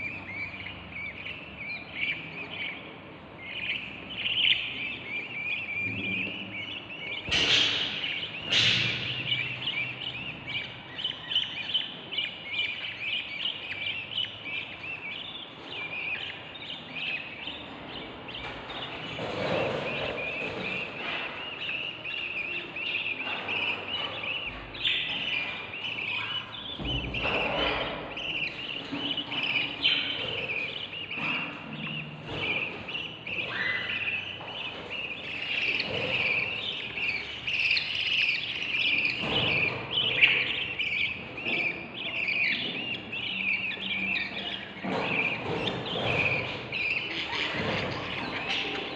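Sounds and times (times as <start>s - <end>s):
chicks chirping: 0.0s - 48.9s
sharp chick calls: 0.0s - 48.9s.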